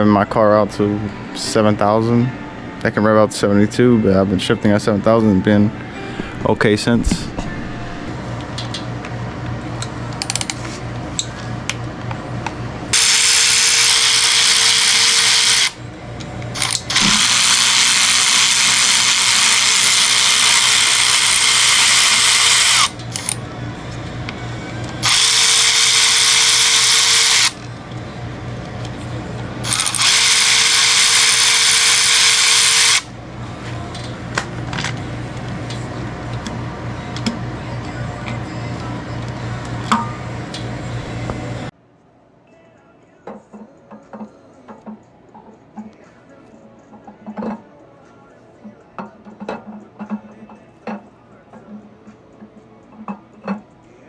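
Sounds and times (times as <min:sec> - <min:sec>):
power tool whining: 0:12.9 - 0:15.8, 0:16.5 - 0:27.9, 0:29.6 - 0:33.2.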